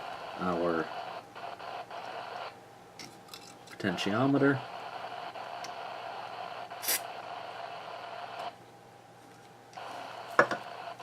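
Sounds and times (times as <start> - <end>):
aerosol can spritz: 6.8 - 7.0.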